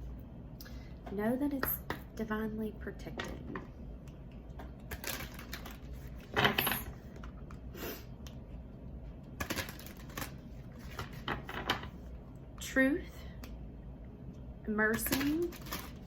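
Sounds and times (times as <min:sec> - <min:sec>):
cards being shuffled: 0:04.8 - 0:07.6, 0:09.4 - 0:12.0.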